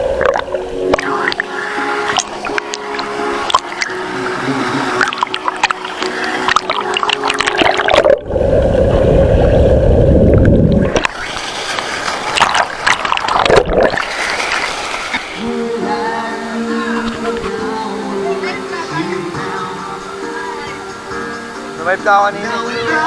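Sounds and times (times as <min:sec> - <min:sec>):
background music: 0:00.0 - 0:08.2, 0:15.4 - 0:23.0
water splashing: 0:00.0 - 0:23.0.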